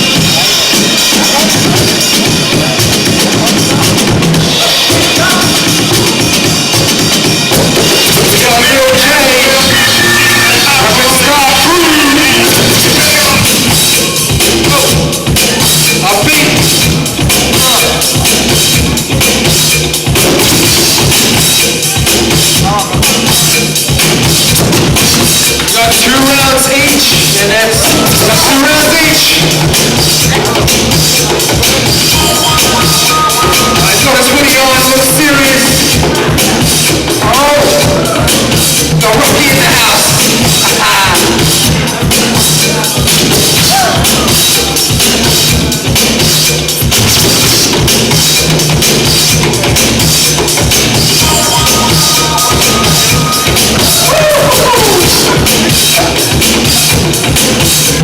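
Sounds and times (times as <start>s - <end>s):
drum kit beat: 0.0s - 58.0s
loud dance music: 0.0s - 58.0s
repeating bass line: 0.0s - 58.0s.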